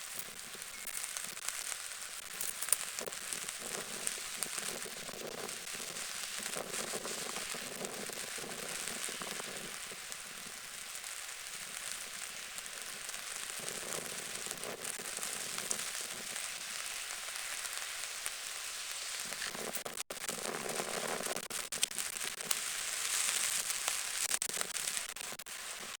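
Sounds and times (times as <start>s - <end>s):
rain falling on a lake: 0.0s - 26.0s.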